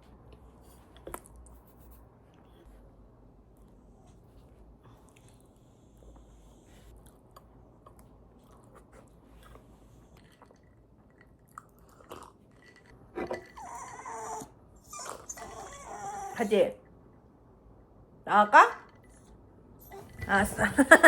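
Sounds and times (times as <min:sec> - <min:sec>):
chewing and crunching food: 0:04.1 - 0:14.2.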